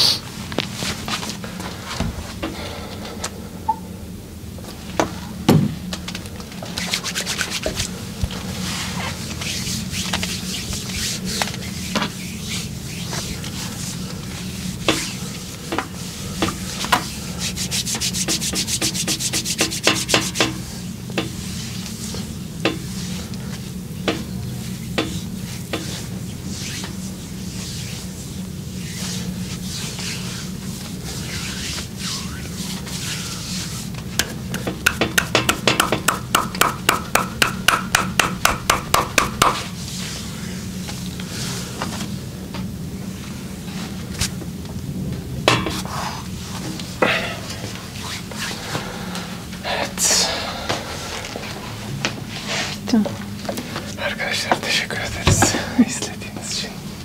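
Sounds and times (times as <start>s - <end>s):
steady low hum: 0.0s - 57.0s
hands rubbing on skin: 6.7s - 20.7s, 25.1s - 33.9s
rhythmic taps on skin: 34.2s - 39.6s.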